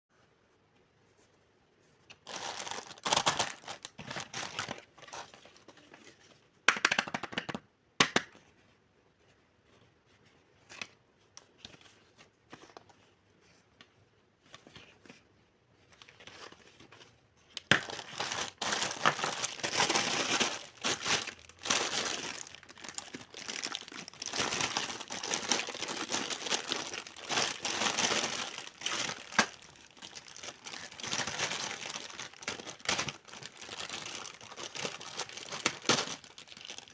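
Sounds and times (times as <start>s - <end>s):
packaging crinkling: 2.2s - 5.4s, 17.6s - 36.9s
packaging rustling: 2.2s - 6.2s, 15.9s - 36.9s
packaging snaps: 17.6s - 36.9s.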